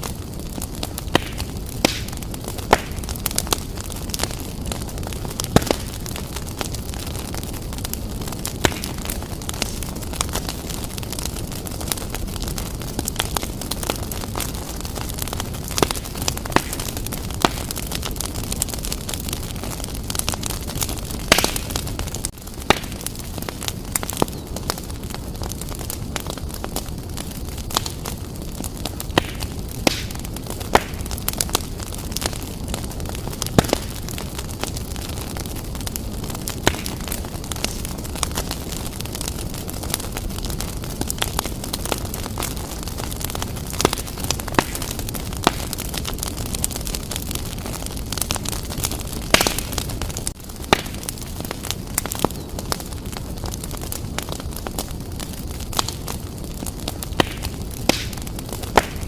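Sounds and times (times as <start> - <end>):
burning wood crackling and popping: 0.0 - 59.0
wood fire rushing: 0.0 - 59.0.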